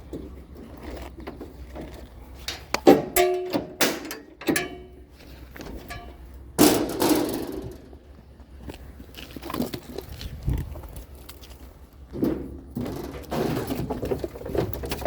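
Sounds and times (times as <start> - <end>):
metal clattering crash: 2.5 - 5.0, 5.8 - 7.9
sharp metal clanks: 2.5 - 5.1, 5.8 - 7.9.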